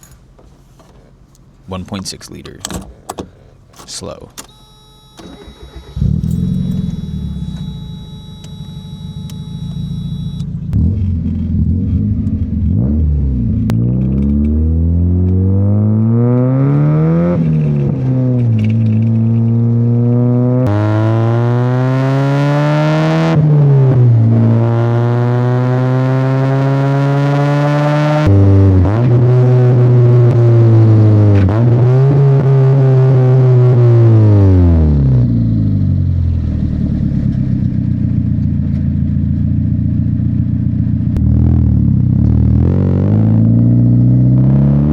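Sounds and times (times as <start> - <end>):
car engine revving and accelerating: 5.3 - 37.4, 41.2 - 44.9.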